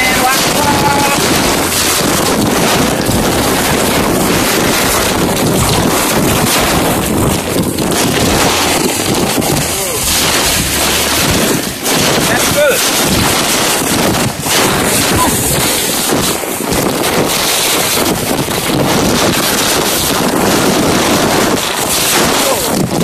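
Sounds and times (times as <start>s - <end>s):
waterfall roaring: 0.0s - 17.0s
wind buffeting microphone: 0.0s - 23.0s.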